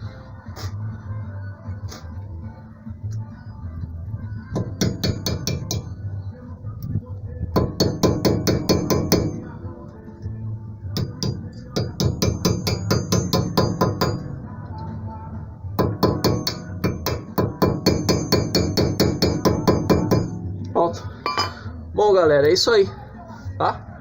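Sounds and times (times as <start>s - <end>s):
hammer tapping on metal: 4.6s - 5.9s, 7.6s - 9.4s, 11.0s - 14.2s, 15.8s - 20.4s, 21.3s - 21.6s.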